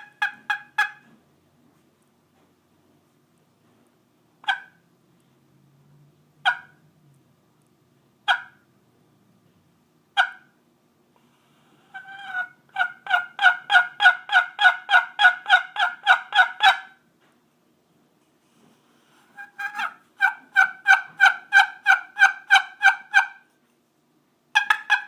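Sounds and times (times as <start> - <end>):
turkey call yelps: 0.0 - 1.0, 4.4 - 4.8, 6.4 - 6.8, 8.3 - 8.6, 10.2 - 10.6, 11.9 - 17.0, 19.4 - 23.5, 24.5 - 25.0.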